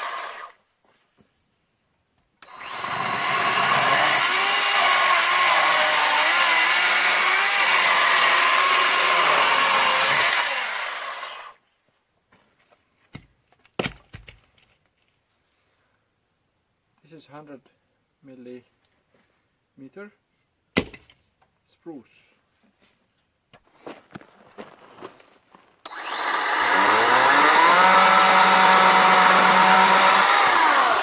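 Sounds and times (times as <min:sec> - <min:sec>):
electric chainsaw cutting log: 0:00.0 - 0:00.6, 0:02.4 - 0:11.6, 0:25.8 - 0:31.0.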